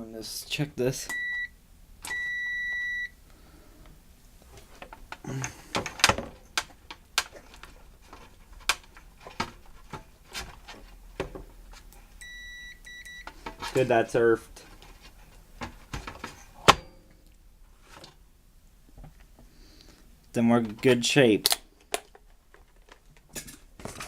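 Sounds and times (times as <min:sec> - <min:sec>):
multimeter beeping: 0:01.1 - 0:03.2, 0:12.2 - 0:13.3.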